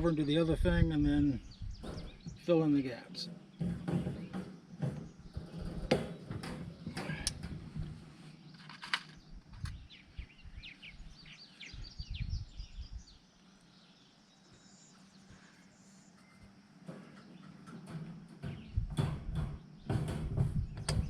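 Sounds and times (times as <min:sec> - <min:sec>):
wire cage panels clinking: 0:16.8 - 0:21.0.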